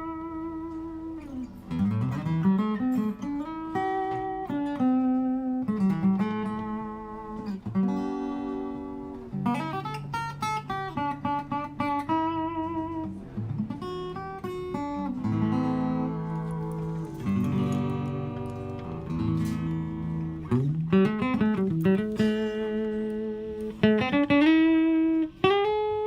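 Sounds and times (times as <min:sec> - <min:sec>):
acoustic guitar playing: 0:00.0 - 0:26.0.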